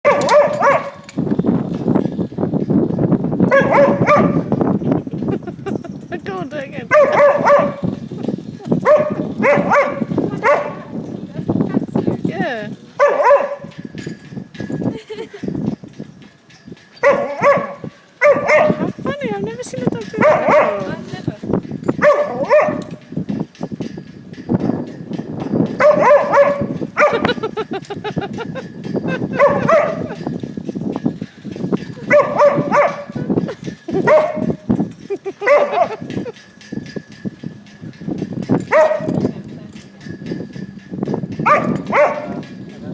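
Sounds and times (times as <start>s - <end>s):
dog yipping: 0.1s - 1.0s, 3.5s - 4.5s, 6.9s - 7.9s, 8.8s - 10.9s, 13.0s - 13.7s, 17.0s - 19.0s, 20.2s - 20.9s, 21.9s - 23.0s, 25.8s - 27.4s, 29.3s - 30.2s, 32.0s - 33.2s, 34.0s - 34.6s, 35.4s - 36.1s, 38.7s - 39.2s, 41.4s - 42.4s.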